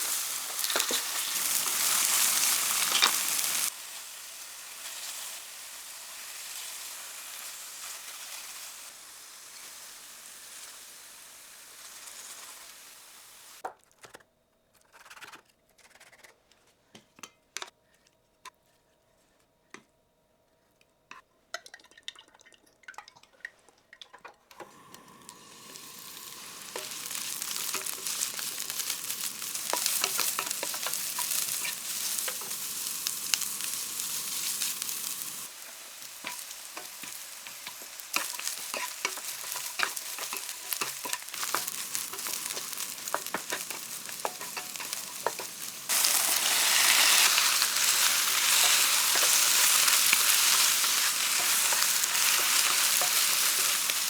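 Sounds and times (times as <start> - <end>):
food sizzling in a frying pan: 0.0 - 13.6, 24.6 - 54.0.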